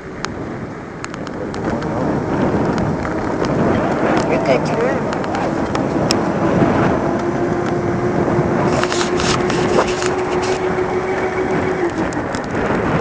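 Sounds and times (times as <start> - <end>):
scooter rumble and rattle: 0.0 - 13.0
electric motor whine: 0.2 - 13.0.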